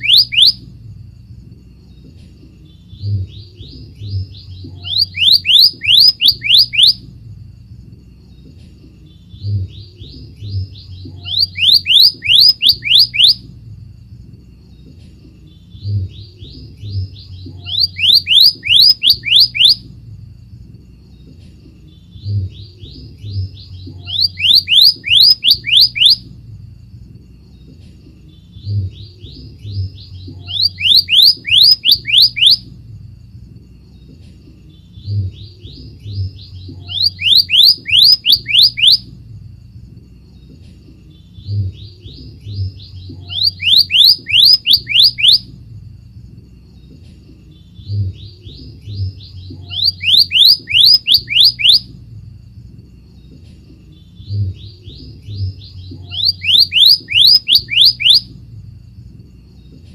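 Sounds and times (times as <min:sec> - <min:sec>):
bird singing rising whistles: 0:00.0 - 0:00.6, 0:04.0 - 0:07.0, 0:09.4 - 0:13.5, 0:16.3 - 0:19.9, 0:22.5 - 0:26.3, 0:28.7 - 0:32.7, 0:35.7 - 0:39.1, 0:41.5 - 0:45.5, 0:47.9 - 0:51.9, 0:54.3 - 0:58.3
bird rising whistled notes: 0:04.8 - 0:07.0, 0:30.4 - 0:32.6, 0:43.2 - 0:45.5, 0:49.6 - 0:51.9, 0:56.0 - 0:58.3.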